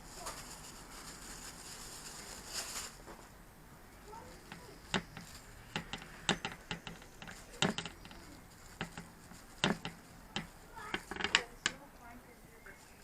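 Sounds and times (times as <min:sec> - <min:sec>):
light clicks and taps on plastic: 0:04.4 - 0:11.9.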